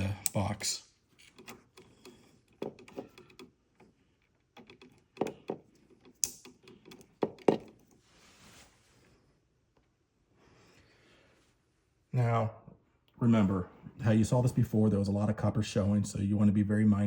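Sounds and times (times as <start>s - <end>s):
wires clicking and knocking: 0.0s - 8.0s.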